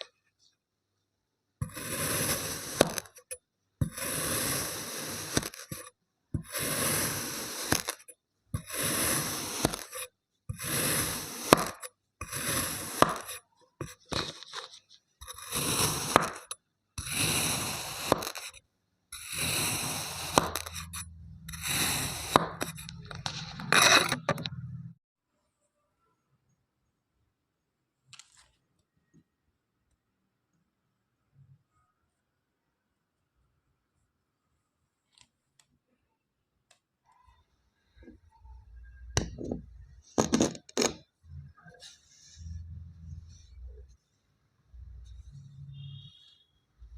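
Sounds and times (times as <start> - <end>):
tool scraping kinetic sand: 1.6 - 24.6.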